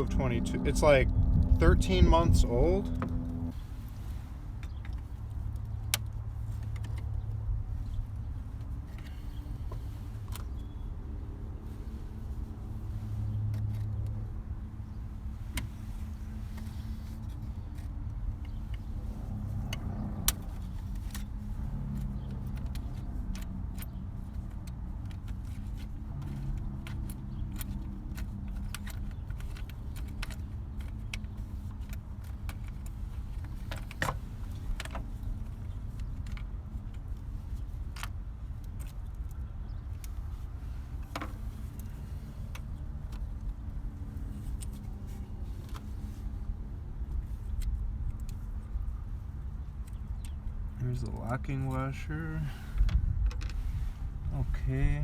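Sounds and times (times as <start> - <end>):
steady low rumble: 0.0 - 5.6.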